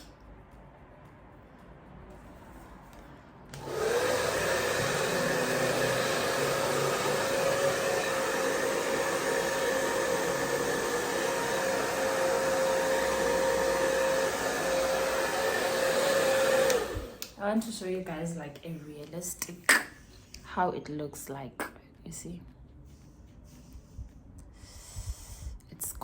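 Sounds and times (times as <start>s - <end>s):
hair dryer whining: 3.5s - 17.4s.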